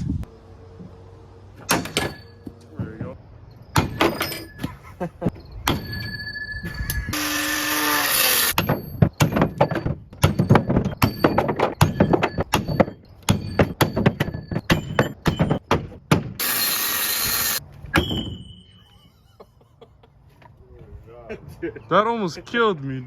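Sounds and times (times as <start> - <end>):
sharp metal knocks: 1.6 - 7.4, 8.4 - 16.6, 17.9 - 18.8
short metallic ring: 1.7 - 2.7, 3.6 - 4.7, 5.4 - 7.2, 16.4 - 19.4
impact wrench bursts: 7.0 - 8.6, 16.4 - 17.6.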